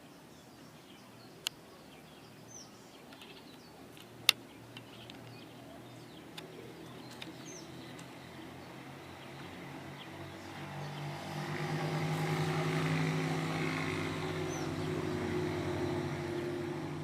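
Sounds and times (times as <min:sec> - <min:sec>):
faint bird chirp: 0:00.0 - 0:11.3
engine drone: 0:04.2 - 0:17.0.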